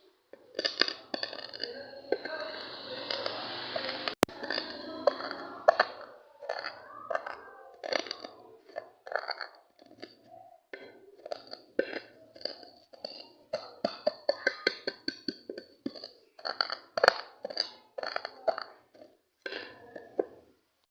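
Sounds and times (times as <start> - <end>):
seeds crunching and scraping: 0.3 - 3.3.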